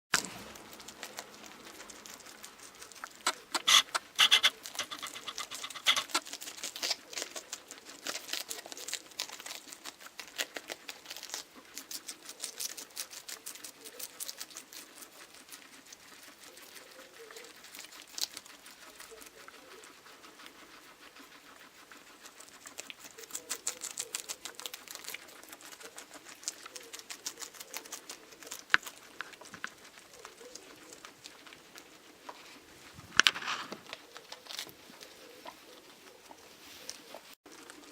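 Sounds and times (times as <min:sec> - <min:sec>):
guinea pigs crunching lettuce: 0:00.1 - 0:37.9.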